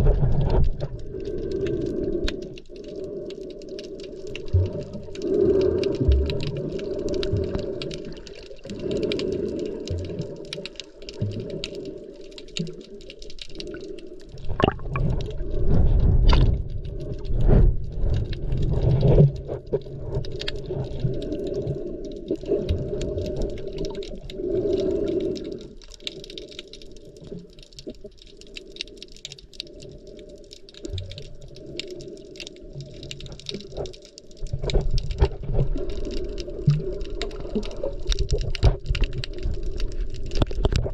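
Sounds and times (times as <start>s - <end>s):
muffled underwater water sloshing: 0.0s - 26.6s
fine crackle of tiny clicks: 0.0s - 40.9s.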